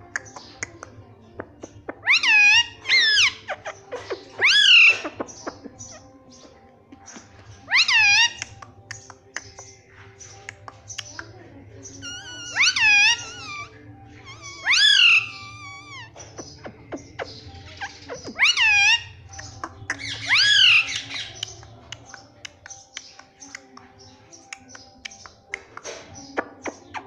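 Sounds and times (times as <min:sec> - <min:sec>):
parakeet calling: 0:01.4 - 0:27.0.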